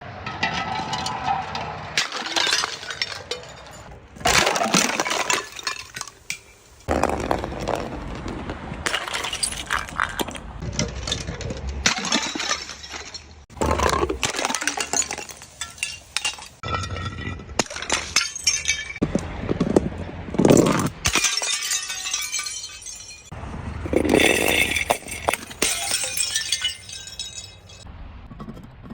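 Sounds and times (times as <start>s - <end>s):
glass bottles shattering: 0.2s - 7.8s, 8.8s - 19.0s, 20.4s - 27.8s
glass pieces clinking: 2.0s - 7.0s, 8.9s - 10.4s, 11.8s - 19.0s, 20.5s - 27.8s.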